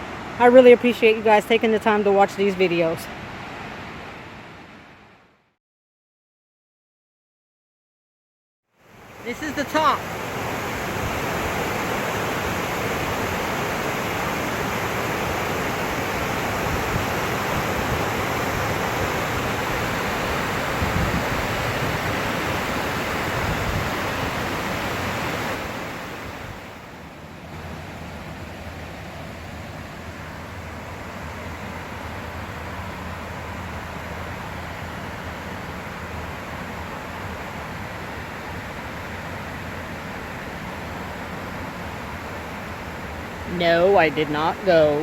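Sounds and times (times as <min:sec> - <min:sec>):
waterfall rushing: 0:09.0 - 0:26.7.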